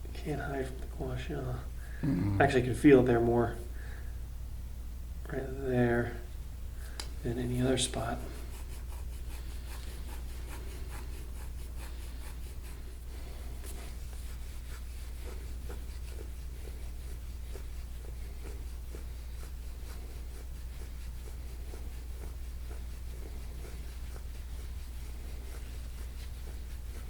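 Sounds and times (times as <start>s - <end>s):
steady low hum: 0.0s - 27.0s
tool scraping over skin: 7.3s - 27.0s.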